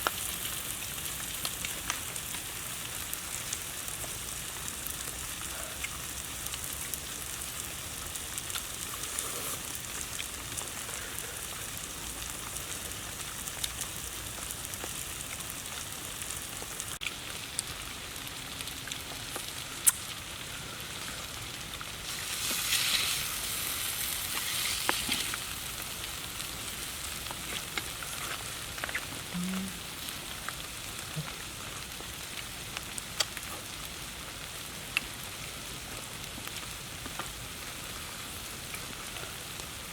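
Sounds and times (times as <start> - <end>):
food sizzling with pops: 0.0 - 39.9.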